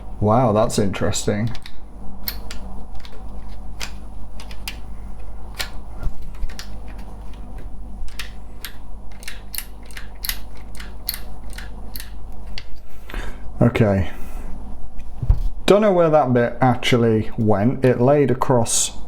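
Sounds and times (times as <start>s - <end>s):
plastic and metal parts clicking: 8.1s - 12.7s.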